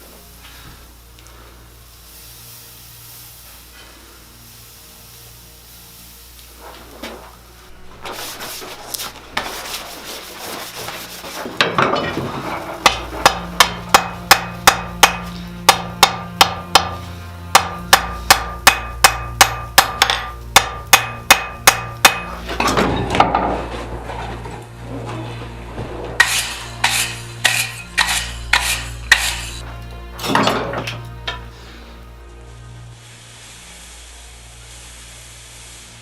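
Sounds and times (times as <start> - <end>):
rough scraping noise: 6.5 - 13.3, 23.4 - 30.4
hammer striking steel on anvil: 12.7 - 23.4, 26.2 - 29.6.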